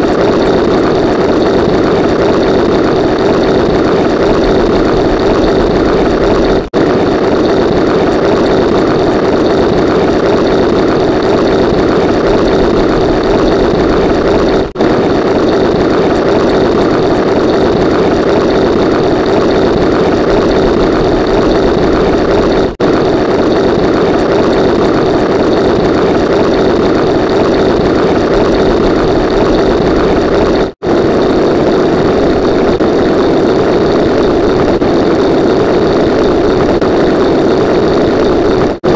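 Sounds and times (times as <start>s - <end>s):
engine-like drone: 0.0s - 38.9s.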